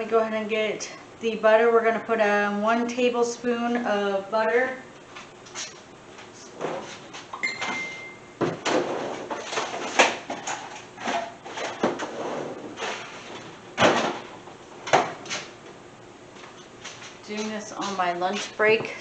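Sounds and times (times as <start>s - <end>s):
doors and drawers opening and shutting: 6.6s - 15.5s
short high beep: 7.4s - 8.3s.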